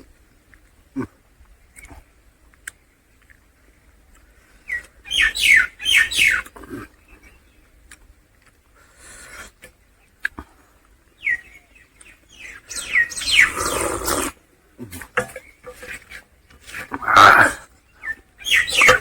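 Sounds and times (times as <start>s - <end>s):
mouth clicks and lip smacks: 1.7s - 3.4s.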